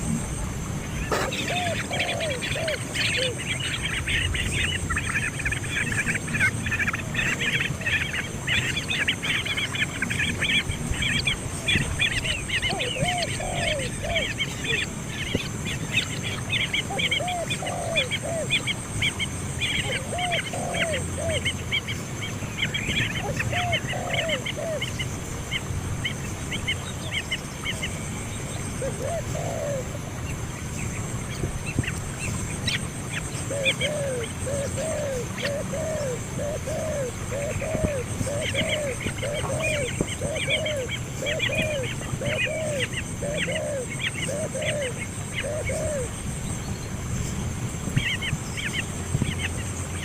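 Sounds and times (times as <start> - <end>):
lower arched bird call: 0.0 - 47.0.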